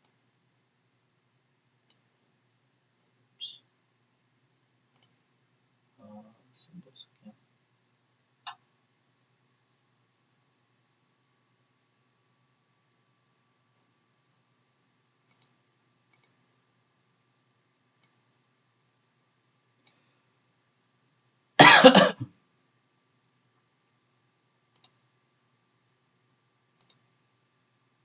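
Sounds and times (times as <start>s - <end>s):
computer mouse clicking: 1.8s - 2.1s, 4.9s - 5.2s, 15.2s - 16.4s, 18.0s - 18.2s, 19.8s - 20.0s, 24.7s - 25.0s, 26.8s - 27.1s
person coughing: 21.6s - 22.3s.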